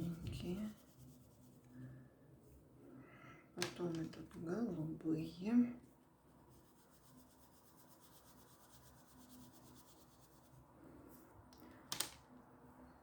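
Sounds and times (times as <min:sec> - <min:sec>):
oil pastel scratching on paper: 0:00.0 - 0:01.8, 0:05.2 - 0:10.7.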